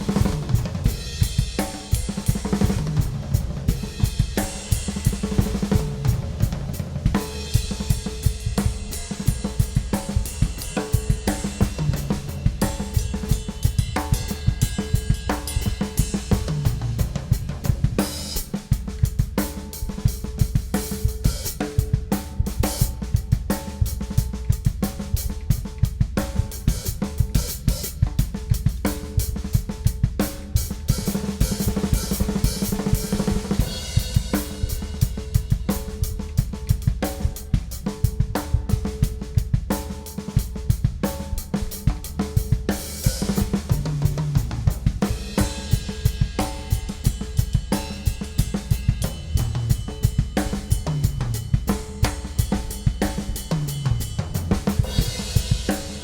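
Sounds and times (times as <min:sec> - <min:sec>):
drum kit groove: 0:00.0 - 0:56.0
tom fill: 0:41.1 - 0:56.0.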